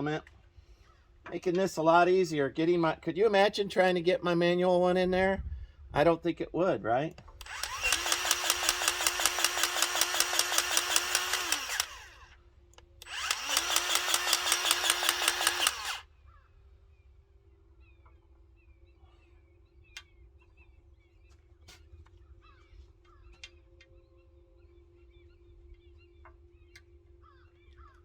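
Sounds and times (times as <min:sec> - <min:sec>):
electric grease gun running: 0:07.4 - 0:16.1
faint bird chirps: 0:22.2 - 0:28.0.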